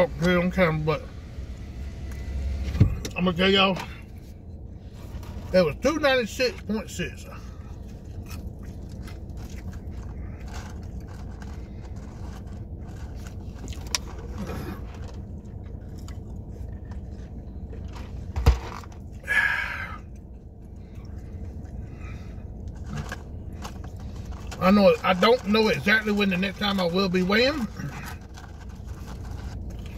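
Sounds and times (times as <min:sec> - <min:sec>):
low hum: 0:00.0 - 0:29.9
chewing and eating: 0:07.2 - 0:18.3, 0:18.9 - 0:29.9.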